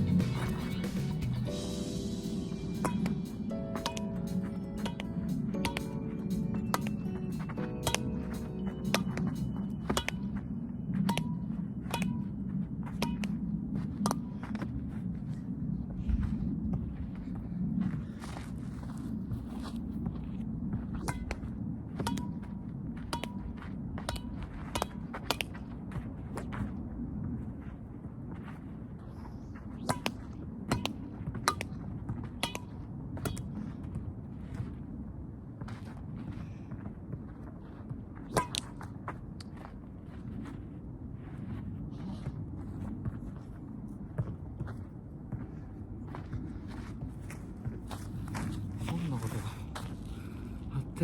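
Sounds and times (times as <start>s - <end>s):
steady low hum: 0.0s - 51.0s
racket striking shuttlecock: 0.9s - 12.3s, 12.9s - 13.4s, 32.3s - 33.5s, 38.3s - 38.9s.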